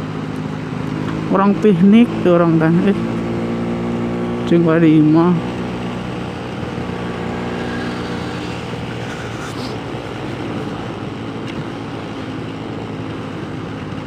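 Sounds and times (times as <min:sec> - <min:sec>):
motorcycle engine running: 0:00.0 - 0:14.0
riding noise: 0:06.5 - 0:12.0.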